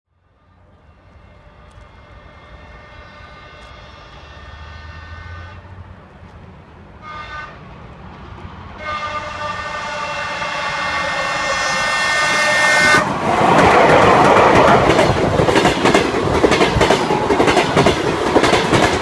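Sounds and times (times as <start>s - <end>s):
locomotive horn blasts: 0.3s - 5.8s, 7.0s - 7.7s, 8.8s - 13.1s
train rumble: 0.3s - 19.0s.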